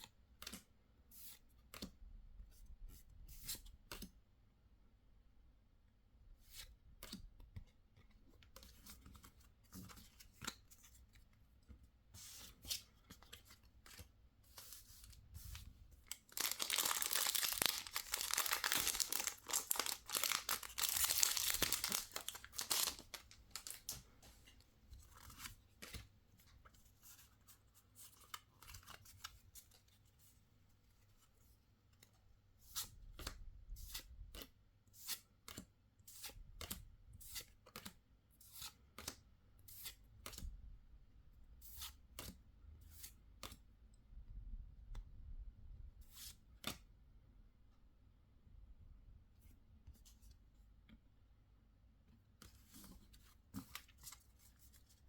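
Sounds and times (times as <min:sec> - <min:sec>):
packaging tearing: 0:16.1 - 0:24.0.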